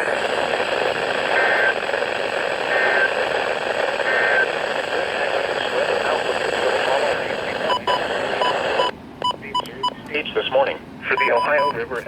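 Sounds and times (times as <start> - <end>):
radio static hiss: 0.0 - 12.0
two-tone digital data bursts: 11.2 - 11.8.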